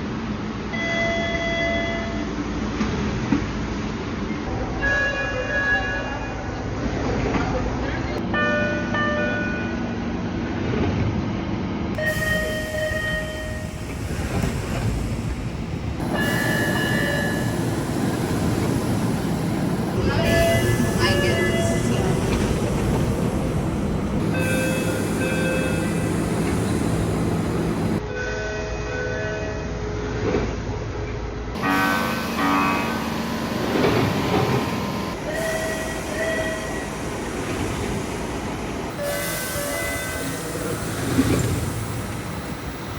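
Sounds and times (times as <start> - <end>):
train rumble: 0.0 - 28.8, 29.4 - 42.9
subway door chimes: 0.7 - 2.3, 4.4 - 6.6, 12.0 - 29.7, 31.6 - 42.9.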